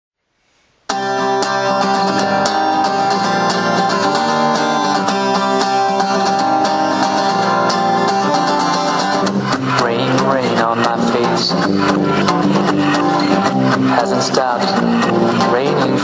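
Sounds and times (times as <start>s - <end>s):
acoustic guitar strumming: 0.9s - 16.0s.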